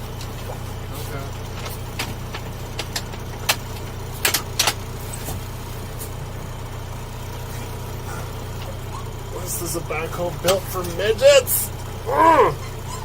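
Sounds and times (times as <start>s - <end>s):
diesel engine idling: 0.0s - 13.0s
sharp clicks and knocks: 1.4s - 5.4s.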